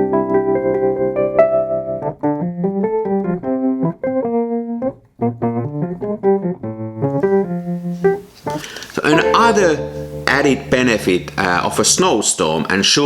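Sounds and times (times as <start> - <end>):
piano music: 0.0 - 13.0.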